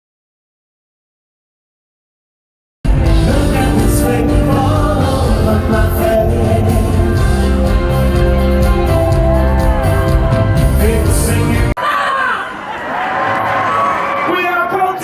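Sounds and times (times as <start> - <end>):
lead singer singing: 2.9 - 11.8
live band playing: 2.9 - 11.8.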